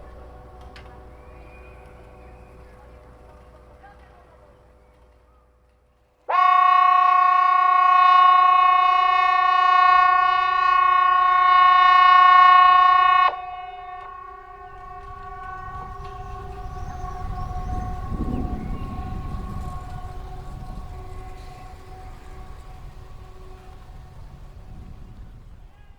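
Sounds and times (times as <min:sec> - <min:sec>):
civil defence siren: 0:00.0 - 0:05.2, 0:06.2 - 0:25.9
low rumble: 0:12.3 - 0:25.9.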